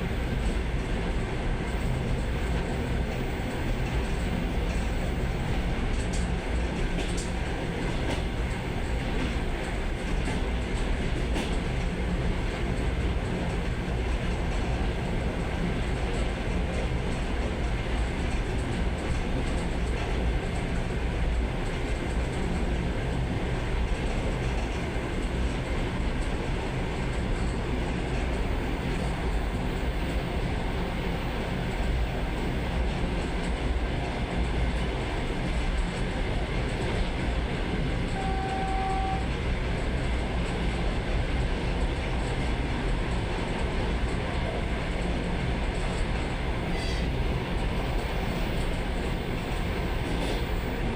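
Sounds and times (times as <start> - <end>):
train wheels rumbling on rails: 0.0 - 50.9
brief high tone: 38.2 - 39.3.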